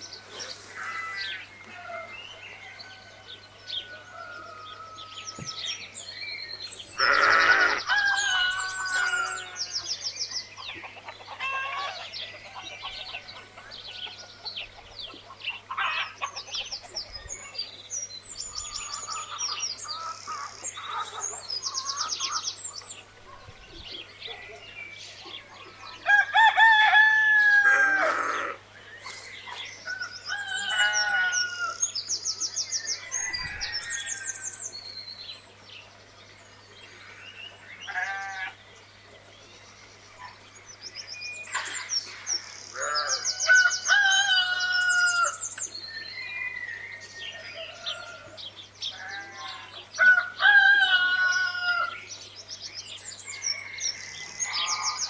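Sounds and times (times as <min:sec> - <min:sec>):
rooster crowing: 0:00.8 - 0:05.8, 0:07.0 - 0:09.8, 0:26.0 - 0:28.6, 0:29.9 - 0:31.8, 0:32.8 - 0:34.5, 0:42.8 - 0:45.4, 0:49.0 - 0:52.0.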